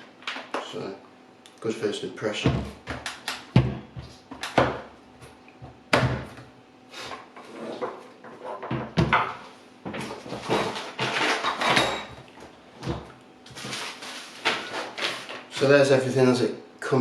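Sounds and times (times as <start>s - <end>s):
packaging rustling and scraping: 13.5s - 15.6s.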